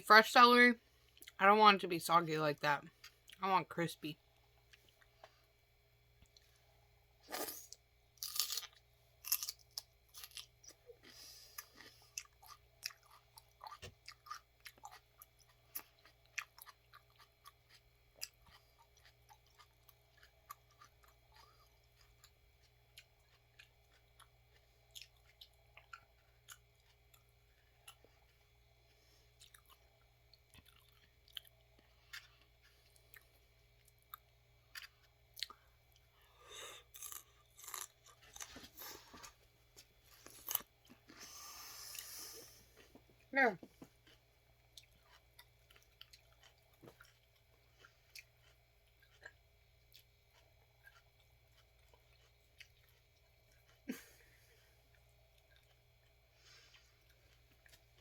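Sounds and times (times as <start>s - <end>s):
person chewing crisp celery: 7.2s - 58.0s.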